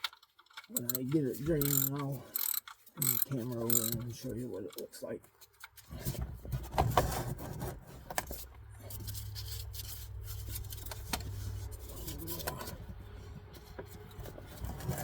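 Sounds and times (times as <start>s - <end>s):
metal clicks: 0.0s - 5.8s
socket ratchet clicking: 0.8s - 4.0s
low steady rumble: 6.0s - 15.0s.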